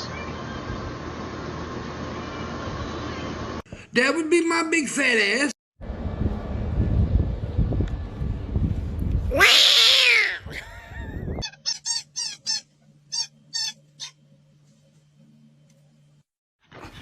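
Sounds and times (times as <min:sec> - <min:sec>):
low background rumble: 0:05.8 - 0:09.4
cat meowing: 0:09.3 - 0:10.5
short high-pitched squeaky cries: 0:11.4 - 0:14.2.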